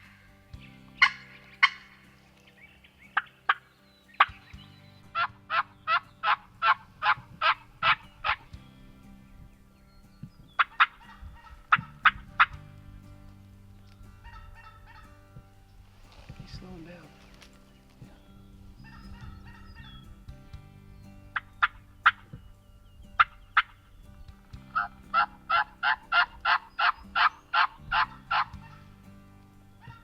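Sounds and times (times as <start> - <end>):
turkey yelping: 1.0 - 2.0, 5.1 - 8.5, 10.6 - 12.6, 14.2 - 15.1, 18.8 - 20.0, 21.3 - 22.3, 23.2 - 23.8, 24.7 - 28.9, 29.8 - 30.0.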